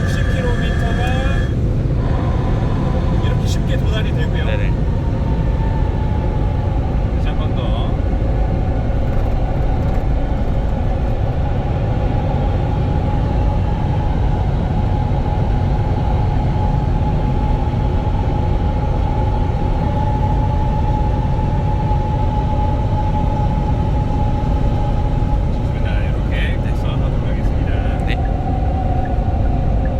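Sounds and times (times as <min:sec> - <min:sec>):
tyre and road noise rumble: 0:00.0 - 0:13.0
high electric motor whine: 0:00.0 - 0:29.9.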